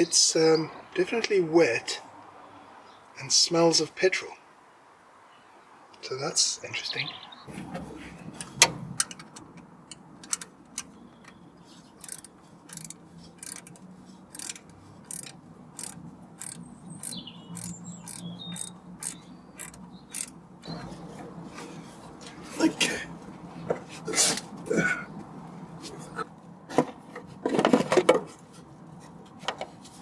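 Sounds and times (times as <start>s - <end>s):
socket ratchet clicking: 14.4s - 20.3s.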